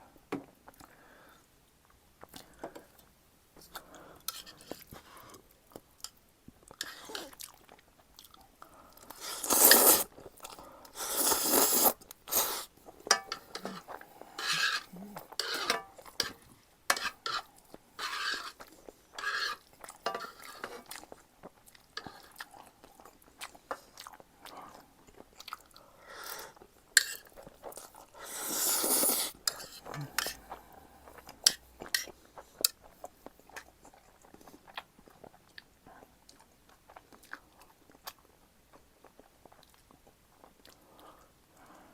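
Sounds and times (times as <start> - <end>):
chewing and crunching: 1.8 - 9.4, 10.0 - 28.3, 29.1 - 41.8
slurping noodles: 9.1 - 10.1, 10.9 - 12.7, 13.5 - 15.7, 27.8 - 31.4.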